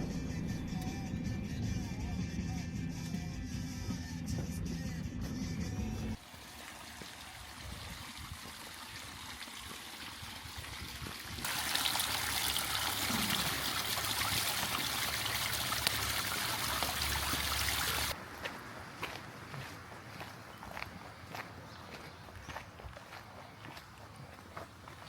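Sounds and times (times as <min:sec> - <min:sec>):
running water: 0:06.2 - 0:19.9.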